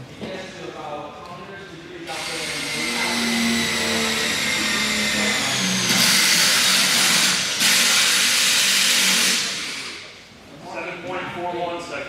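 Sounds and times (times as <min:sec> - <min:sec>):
harsh grinding of drill bit: 0:02.1 - 0:10.0
power tool motor under load: 0:02.1 - 0:10.0.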